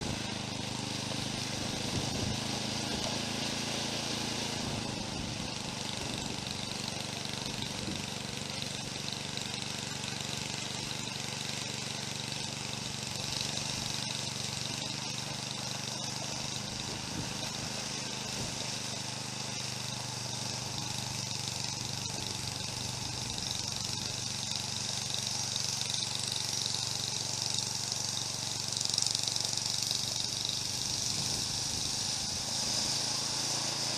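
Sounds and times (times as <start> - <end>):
snowblower engine running: 0.0 - 33.9
even hiss: 13.1 - 33.9.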